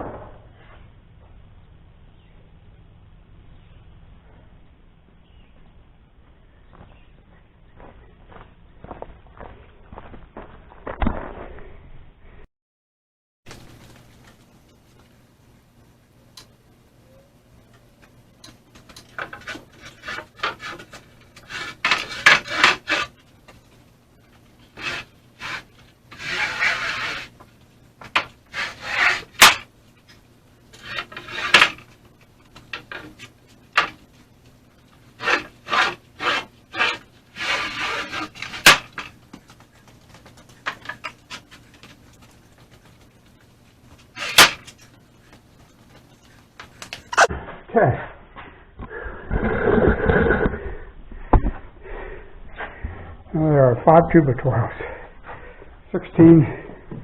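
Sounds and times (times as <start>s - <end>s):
wooden boards scraping: 18.7s - 29.7s, 30.7s - 34.2s, 35.0s - 47.6s.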